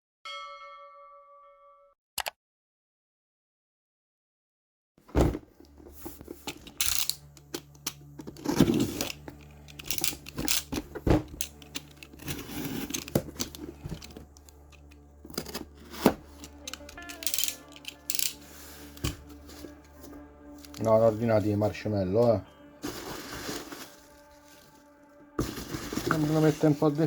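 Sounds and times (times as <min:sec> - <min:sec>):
steady low hum: 0:05.0 - 0:27.0
packaging rustling and tearing: 0:05.7 - 0:21.1, 0:22.8 - 0:26.8
bottles clicking together: 0:16.4 - 0:18.4.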